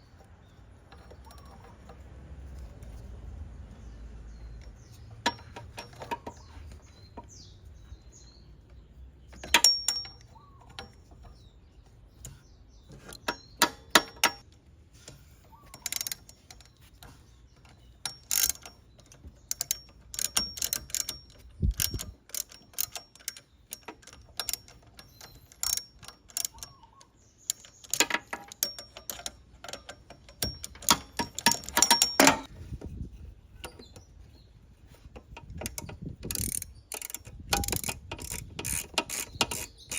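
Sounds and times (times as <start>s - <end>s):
metal tool clinks: 9.4s - 10.4s
socket ratchet clicking: 15.7s - 32.5s, 35.2s - 39.9s.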